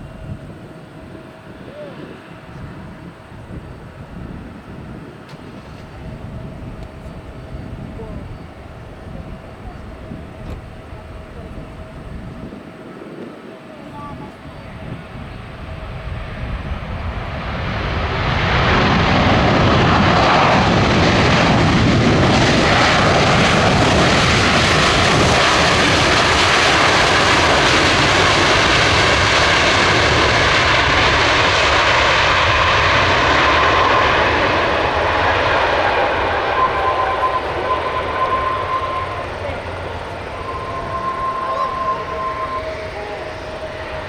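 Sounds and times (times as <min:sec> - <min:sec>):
jet engines landing: 0:00.0 - 0:44.0.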